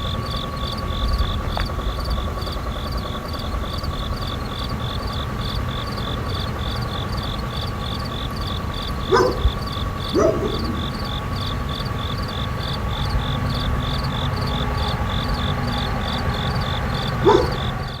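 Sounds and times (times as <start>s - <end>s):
crickets chirping: 0.0s - 18.0s
high insect drone: 0.0s - 18.0s
short animal calls: 9.0s - 11.2s, 17.2s - 17.8s.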